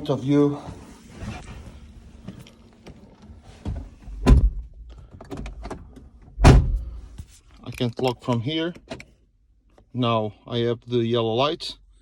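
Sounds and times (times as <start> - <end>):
car door shutting thunk: 3.6 - 5.8, 6.4 - 7.0.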